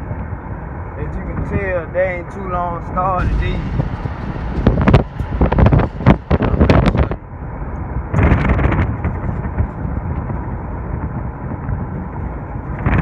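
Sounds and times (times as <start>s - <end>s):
sharp knocks and clatters: 3.2s - 7.3s
hissing gust: 3.2s - 7.7s
vehicle road rumble: 3.2s - 13.0s
wind buffeting microphone: 3.2s - 13.0s.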